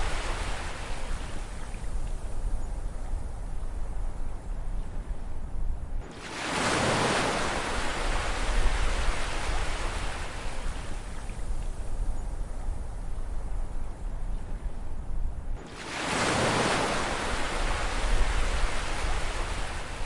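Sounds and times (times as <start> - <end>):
low rumble of surf: 0.0 - 20.0.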